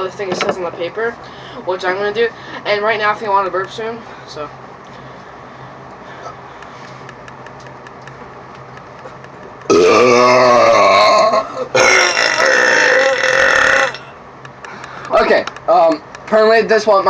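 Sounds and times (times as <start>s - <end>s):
person burping loudly: 9.7s - 14.1s.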